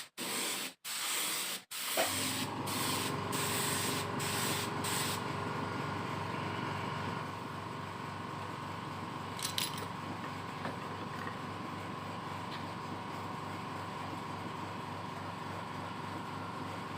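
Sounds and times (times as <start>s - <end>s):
spray gun hissing: 0.0s - 5.2s
machine hum with whine: 2.1s - 16.9s.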